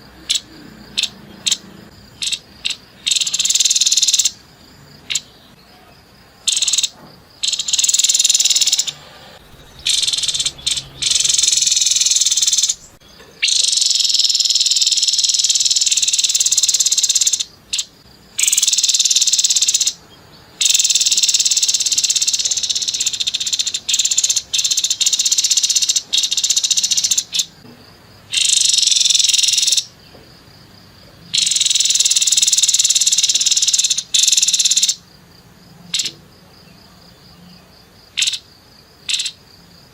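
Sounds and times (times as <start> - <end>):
bird harsh buzzy trills: 7.4 - 16.2.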